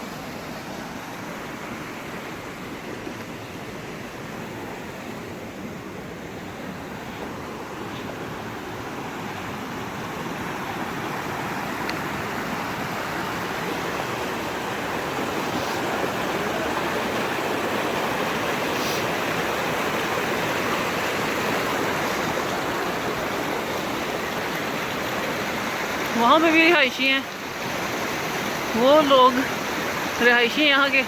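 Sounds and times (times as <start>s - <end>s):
rushing mountain water: 0.0s - 31.0s.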